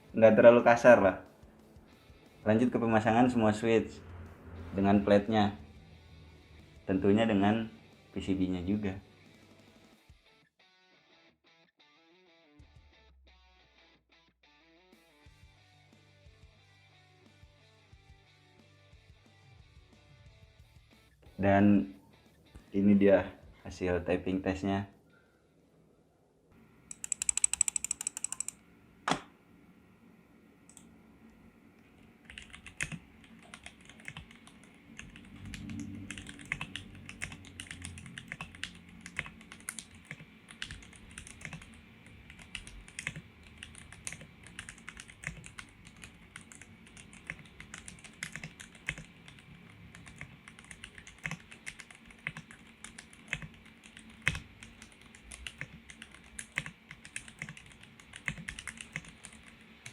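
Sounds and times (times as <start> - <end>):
mechanical keyboard typing: 26.9 - 29.2, 32.2 - 59.9.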